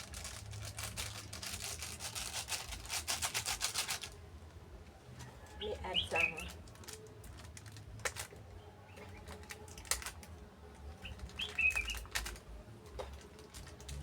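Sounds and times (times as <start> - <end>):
bird chirping: 5.5 - 6.6, 10.8 - 12.2.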